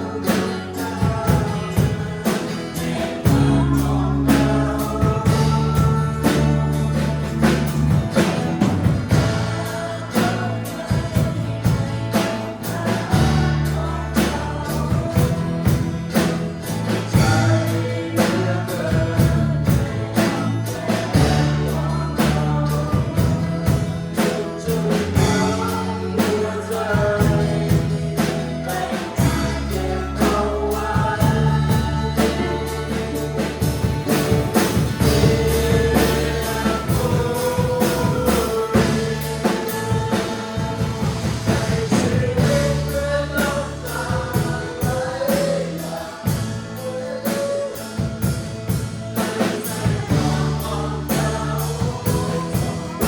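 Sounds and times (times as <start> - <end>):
group singing: 0.0 - 53.0
held bass notes: 0.0 - 53.0
steady drum beat: 0.0 - 53.0.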